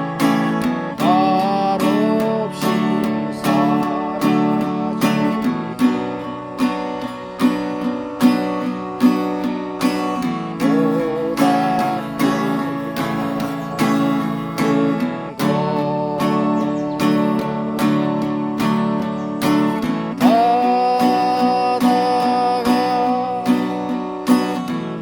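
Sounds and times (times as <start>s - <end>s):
acoustic guitar strumming: 0.0s - 25.0s
wavering melody line: 7.2s - 17.7s.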